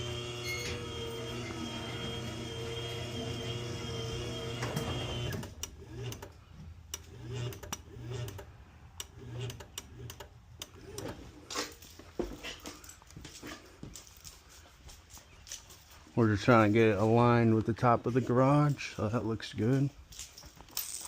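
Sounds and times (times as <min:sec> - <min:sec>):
garage door opener motor: 0:00.0 - 0:11.2.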